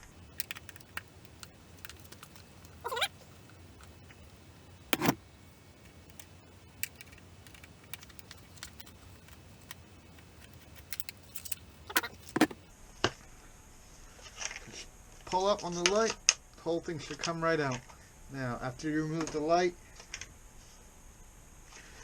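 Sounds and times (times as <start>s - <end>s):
screwdriver and screws clinking: 5.0s - 5.2s, 6.0s - 12.6s.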